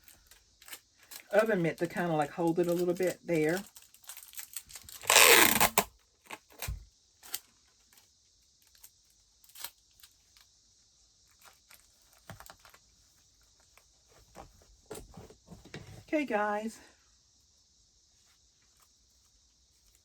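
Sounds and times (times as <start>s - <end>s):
sticky tape tearing from roll: 4.8s - 7.4s
handling rustles and taps: 11.3s - 16.1s.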